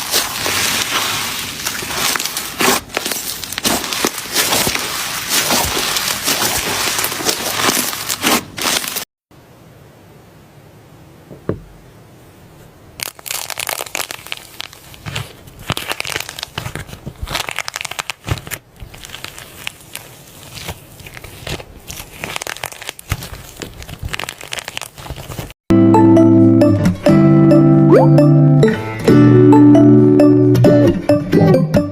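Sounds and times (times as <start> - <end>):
squeeze toy crinkling: 0.0 - 9.1, 13.0 - 25.6.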